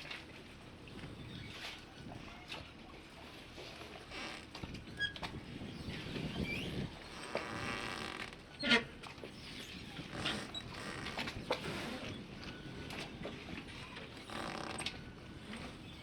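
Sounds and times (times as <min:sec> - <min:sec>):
creaks: 0:04.1 - 0:05.1, 0:06.5 - 0:08.9, 0:10.1 - 0:12.0, 0:14.2 - 0:15.0.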